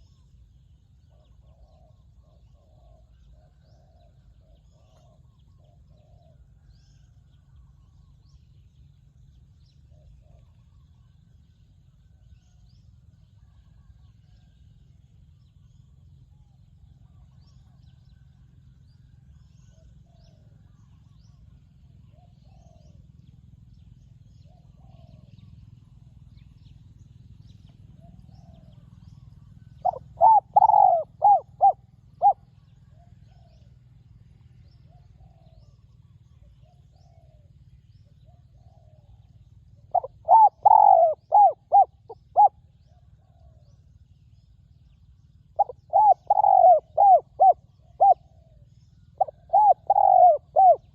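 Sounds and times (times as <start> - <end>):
dove cooing: 1.1 - 6.4, 22.1 - 23.0, 27.9 - 33.5, 39.9 - 43.6, 45.6 - 50.9
faint short bird calls: 28.0 - 33.4, 39.9 - 42.6.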